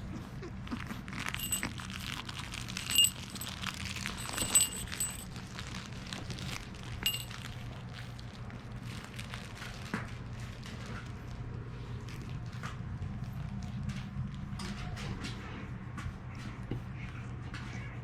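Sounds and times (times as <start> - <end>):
ringing clinks: 1.3 - 5.3, 7.0 - 7.4.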